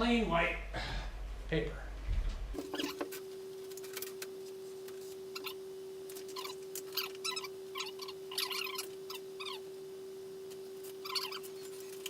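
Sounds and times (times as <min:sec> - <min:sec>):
squeaks and clicks: 0:02.6 - 0:03.2, 0:05.3 - 0:09.6, 0:10.8 - 0:12.0.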